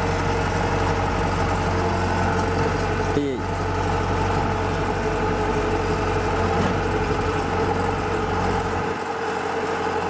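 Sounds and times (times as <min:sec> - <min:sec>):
diesel engine running: 0:00.0 - 0:10.0.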